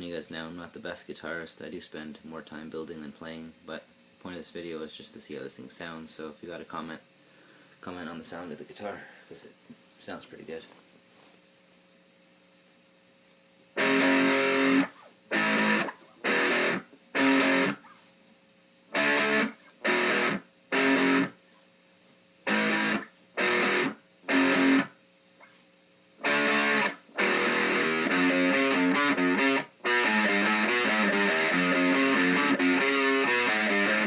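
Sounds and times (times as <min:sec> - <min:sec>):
faint amp hum: 0:00.0 - 0:34.0
distorted electric guitar riff: 0:13.8 - 0:17.9, 0:18.9 - 0:21.4, 0:22.4 - 0:25.0, 0:26.2 - 0:34.0.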